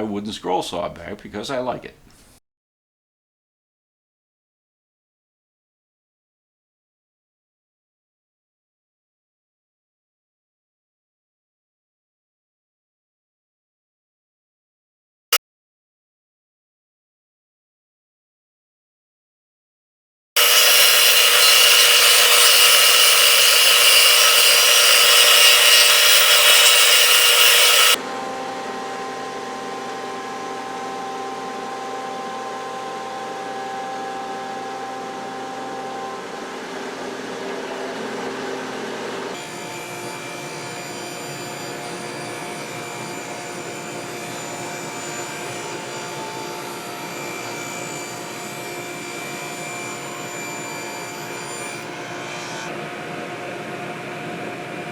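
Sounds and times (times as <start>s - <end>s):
power saw cutting wood: 20.4s - 30.8s, 34.8s - 52.8s.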